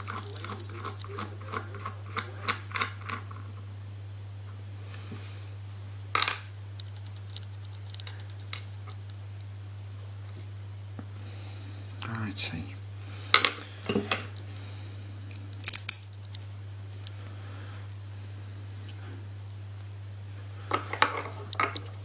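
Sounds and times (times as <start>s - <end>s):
lock parts clicking: 15.3s - 16.5s.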